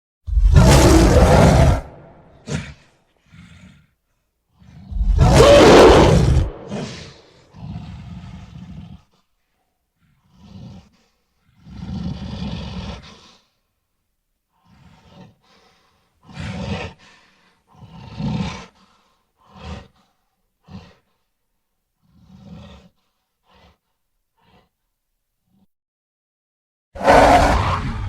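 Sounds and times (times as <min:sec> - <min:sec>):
giant gorilla grunts and huffs: 0:00.3 - 0:04.0, 0:14.6 - 0:21.2, 0:22.0 - 0:24.8.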